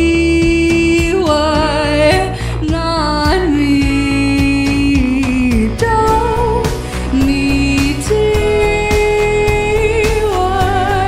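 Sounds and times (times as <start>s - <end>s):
pop drum beat and bass: 0.0s - 11.0s
person singing long notes: 5.2s - 11.0s.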